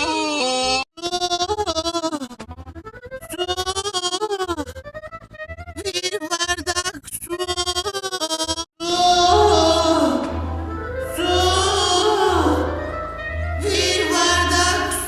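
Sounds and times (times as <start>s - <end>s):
operatic-style singing voice: 8.8s - 13.0s, 13.6s - 15.0s.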